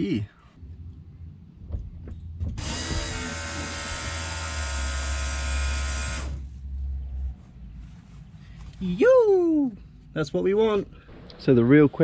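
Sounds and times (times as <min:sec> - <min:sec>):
electric fuel pump whirring: 0:02.6 - 0:06.5.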